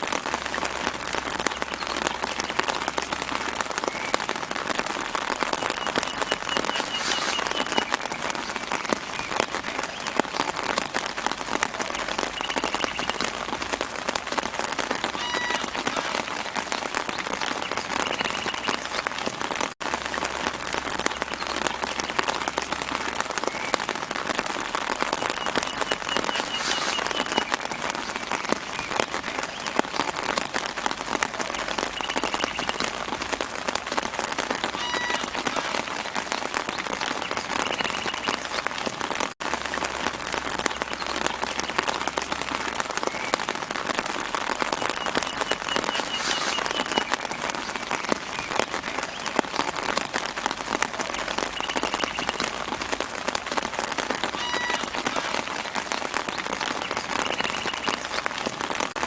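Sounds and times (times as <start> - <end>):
light rain pattering on leaves: 0.0 - 59.0
faint bird chirps: 5.6 - 8.2, 44.8 - 47.3.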